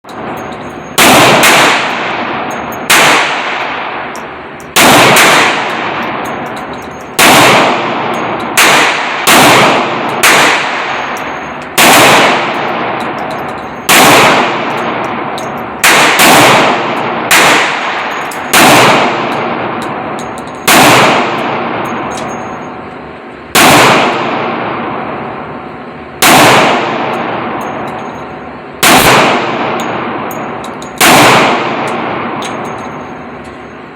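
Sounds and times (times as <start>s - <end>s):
gunshots: 1.0s - 4.1s, 4.7s - 6.4s, 7.1s - 22.2s, 23.5s - 25.1s, 26.2s - 27.8s, 28.8s - 32.8s.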